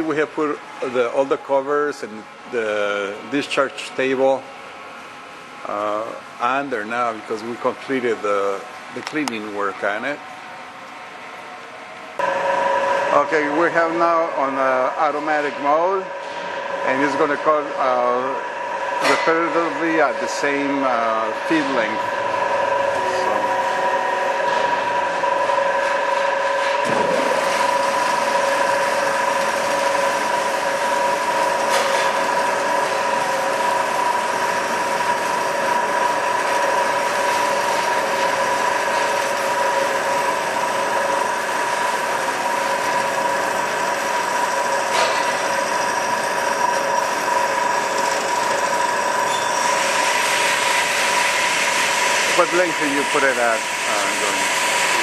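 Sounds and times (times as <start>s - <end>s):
steady high tone: 12.2s - 26.8s
band saw cutting metal: 12.2s - 55.0s.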